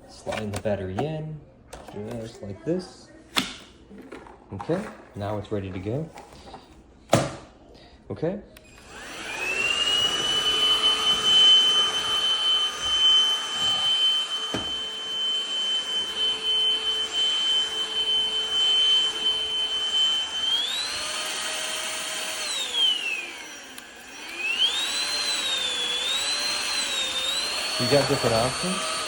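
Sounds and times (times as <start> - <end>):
vacuum motor whining: 8.6 - 29.0.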